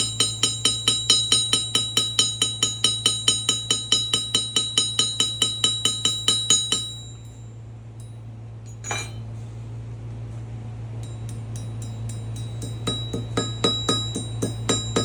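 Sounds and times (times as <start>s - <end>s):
steady low hum: 0.0s - 15.0s
ringing metallic strikes: 8.7s - 9.2s, 11.0s - 15.0s.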